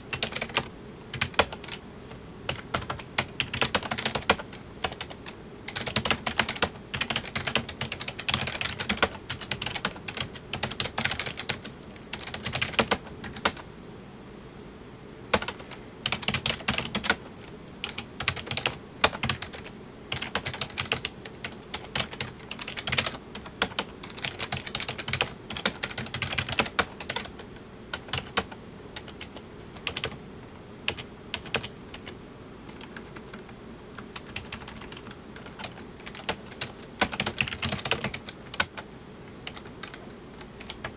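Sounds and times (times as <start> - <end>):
faint low hum: 0.0 - 40.9.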